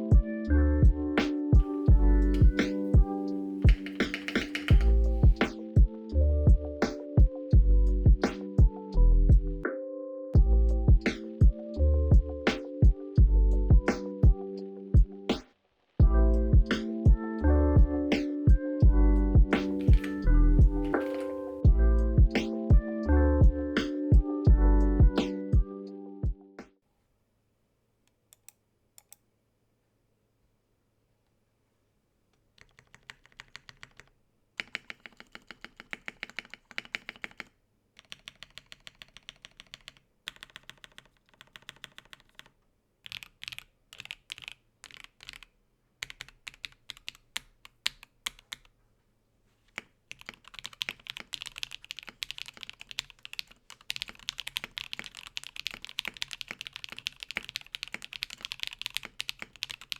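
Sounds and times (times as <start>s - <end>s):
mechanical keyboard typing: 1.6s - 5.7s, 19.6s - 21.6s, 32.6s - 48.7s, 49.7s - 59.9s.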